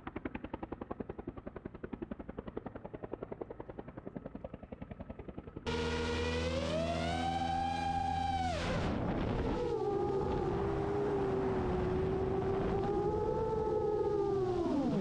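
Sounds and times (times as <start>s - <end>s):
aircraft engine whine: 0.0s - 15.0s.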